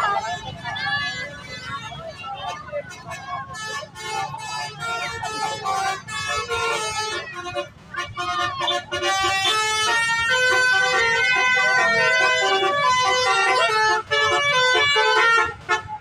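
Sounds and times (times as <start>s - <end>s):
musical air horns playing a tune: 2.7s - 16.0s.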